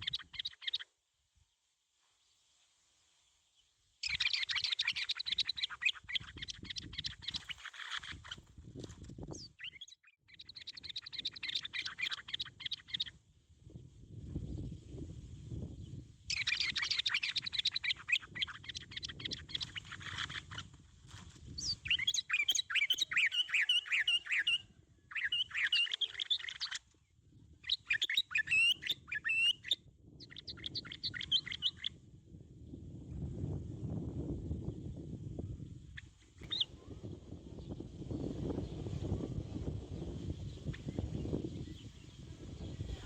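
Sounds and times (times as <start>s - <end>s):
bird chirping and warbling: 0.0s - 0.8s, 4.0s - 8.4s, 9.3s - 13.1s, 16.3s - 20.7s, 21.6s - 26.9s, 27.6s - 32.0s, 36.0s - 39.4s.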